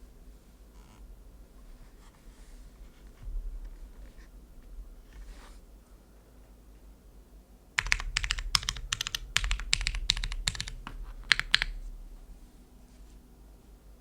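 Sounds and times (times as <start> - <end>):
mechanical keyboard typing: 7.8 - 11.9.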